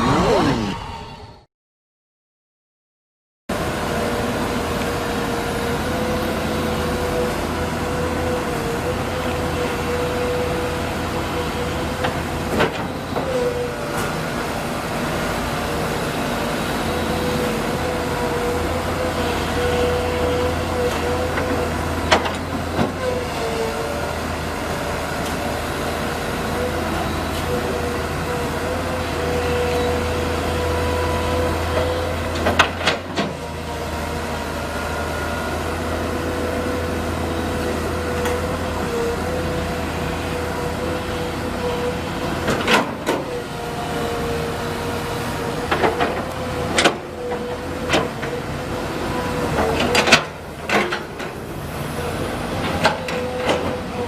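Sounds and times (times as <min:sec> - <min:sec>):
excavator engine running: 0:00.0 - 0:01.5, 0:03.5 - 0:54.0
hydraulic whine: 0:00.0 - 0:01.5.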